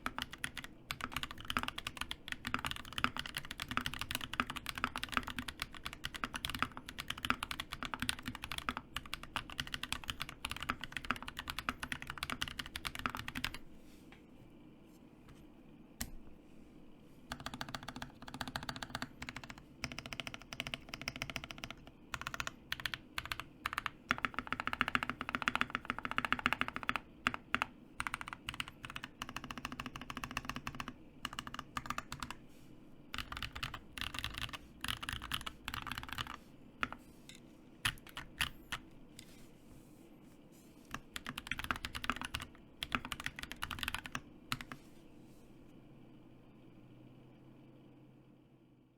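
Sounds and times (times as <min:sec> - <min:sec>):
mechanical keyboard typing: 0:00.0 - 0:13.6, 0:17.3 - 0:32.4, 0:33.1 - 0:39.3, 0:40.9 - 0:44.8.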